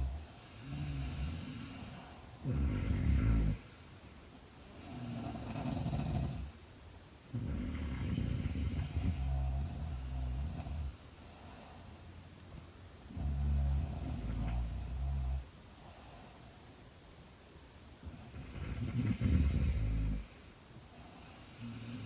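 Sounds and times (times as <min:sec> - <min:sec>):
woman snoring: 0:00.0 - 0:03.7, 0:04.7 - 0:06.5, 0:07.3 - 0:11.6, 0:13.1 - 0:15.5, 0:18.0 - 0:20.3, 0:21.0 - 0:22.0.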